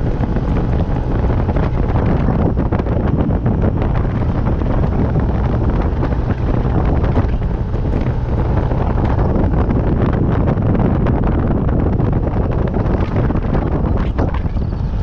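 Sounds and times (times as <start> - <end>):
vehicle noise: 0.0 - 15.0
wind buffeting microphone: 0.0 - 15.0.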